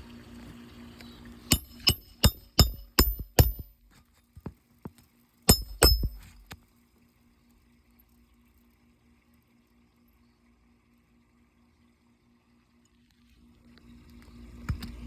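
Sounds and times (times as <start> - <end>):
hammer striking metal: 1.5 - 3.8, 5.5 - 6.4.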